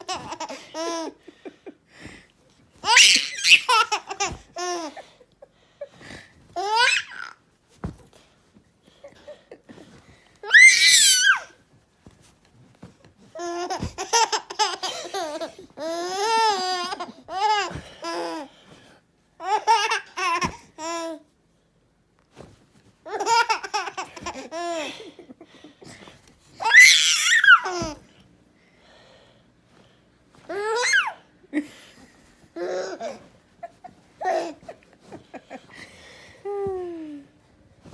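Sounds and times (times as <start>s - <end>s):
baby laughing hysterically: 0.0s - 1.2s, 2.8s - 5.0s, 6.6s - 7.4s, 10.5s - 11.5s, 13.4s - 18.2s, 23.1s - 25.1s
baby shrieking with delight: 10.4s - 11.5s, 26.6s - 27.9s, 30.6s - 31.2s.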